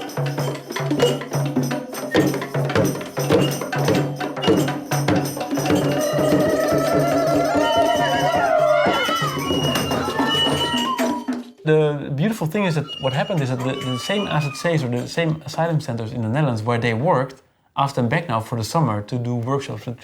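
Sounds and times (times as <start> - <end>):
struck percussion beat: 0.0 - 15.4.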